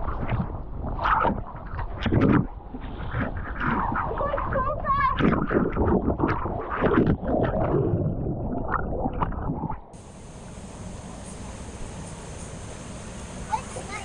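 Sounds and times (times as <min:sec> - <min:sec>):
water rushing and splashing: 0:00.0 - 0:12.0, 0:13.4 - 0:14.0
steady hiss: 0:10.0 - 0:14.0.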